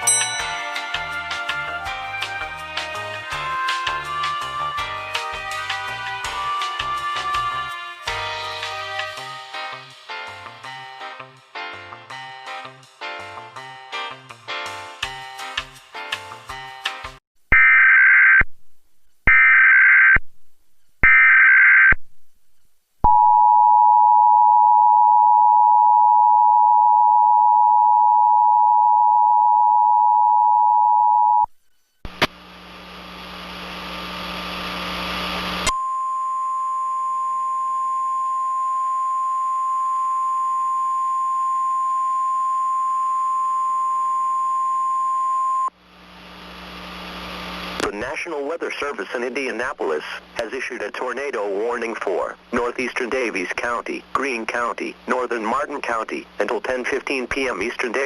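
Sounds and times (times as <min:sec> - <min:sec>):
radio hiss with low hum: 0:32.1 - 0:35.7, 0:45.8 - 0:58.0.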